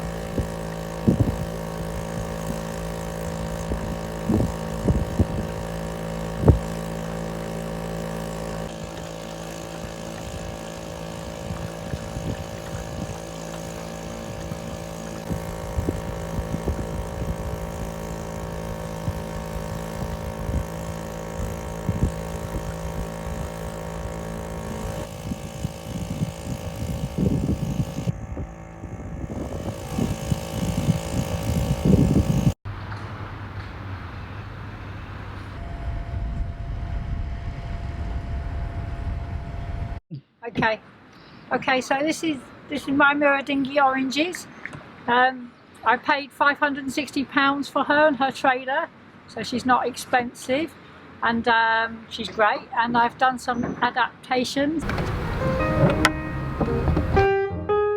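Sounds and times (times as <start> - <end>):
engine running steadily: 0.0 - 40.0, 54.8 - 57.3.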